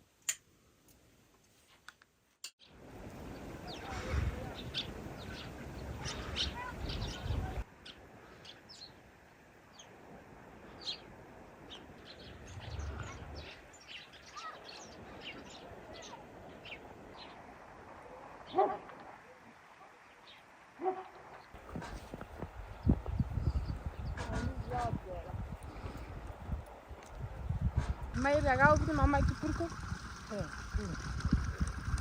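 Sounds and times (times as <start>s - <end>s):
small birds chirping: 2.6s - 9.0s, 11.7s - 17.5s, 19.9s - 26.2s.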